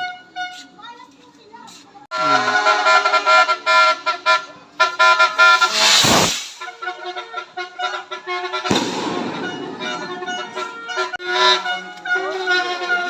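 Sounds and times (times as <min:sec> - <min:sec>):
firecrackers going off: 0:05.4 - 0:06.8, 0:08.6 - 0:11.0.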